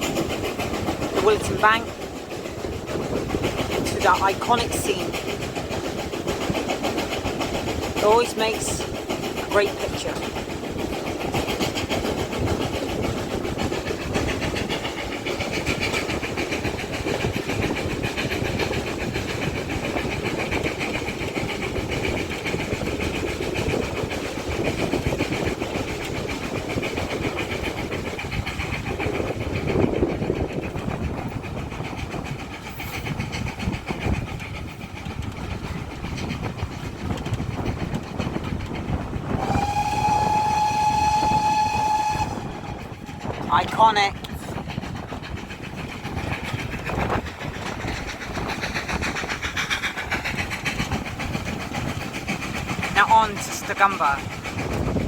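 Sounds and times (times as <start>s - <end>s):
train wheels rumbling: 0.0s - 55.0s
steam locomotive whistle: 39.4s - 43.0s.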